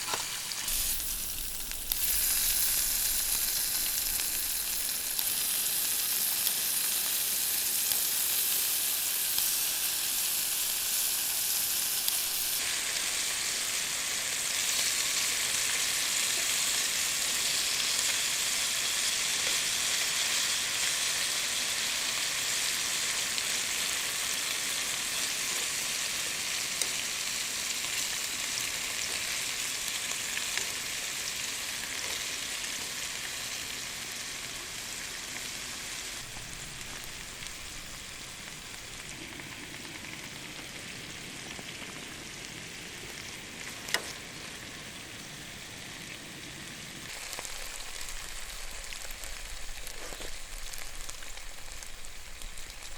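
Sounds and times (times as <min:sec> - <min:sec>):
campfire crackling: 0:00.0 - 0:13.7, 0:36.2 - 0:52.9.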